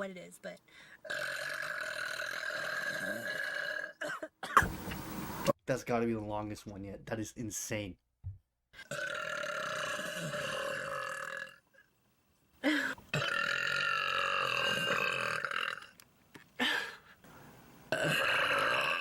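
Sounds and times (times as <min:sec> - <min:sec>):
woman burping: 0:01.1 - 0:04.7, 0:08.8 - 0:11.6, 0:12.6 - 0:15.9, 0:17.9 - 0:19.0.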